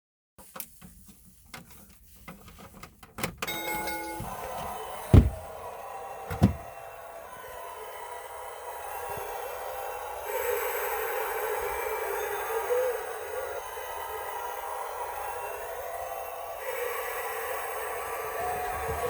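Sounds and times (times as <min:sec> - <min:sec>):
recorded crowd noise: 0:03.5 - 0:19.0
loud thumps: 0:05.1 - 0:05.5, 0:06.3 - 0:06.6.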